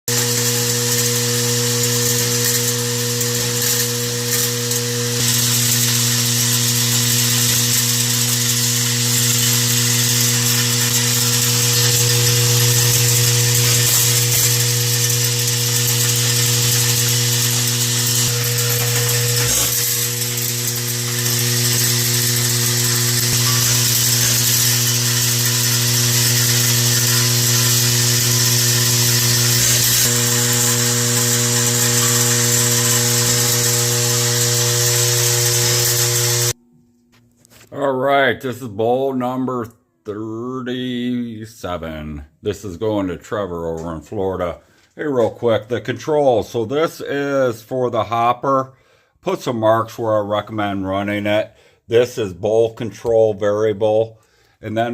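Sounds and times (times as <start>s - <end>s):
electric buzz of vibratory drive: 0.1s - 36.6s.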